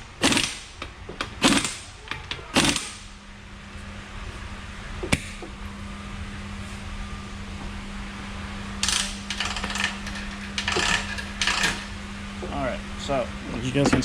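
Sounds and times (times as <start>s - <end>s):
steady low hum: 0.0s - 14.0s
metal tools clinking and rattling: 8.8s - 11.9s.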